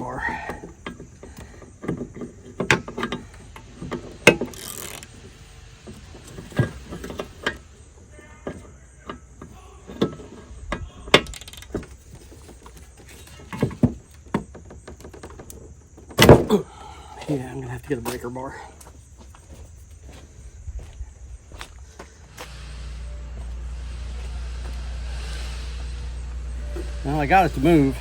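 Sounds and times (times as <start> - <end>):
socket wrench clicking: 4.3 - 5.1.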